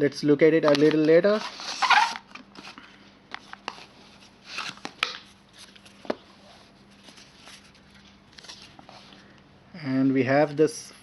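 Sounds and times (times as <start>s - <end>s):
packaging rustling: 0.6s - 9.2s.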